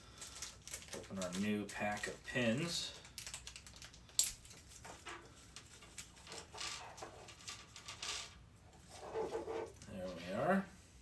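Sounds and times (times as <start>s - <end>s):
packet crinkling: 0.0s - 7.5s.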